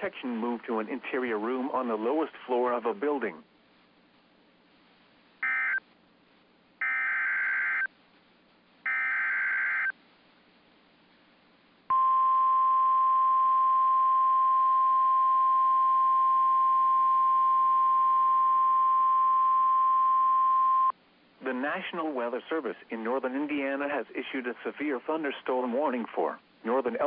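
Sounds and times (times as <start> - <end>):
harsh buzzing data tones: 5.4 - 5.8, 6.8 - 7.9, 8.9 - 9.9.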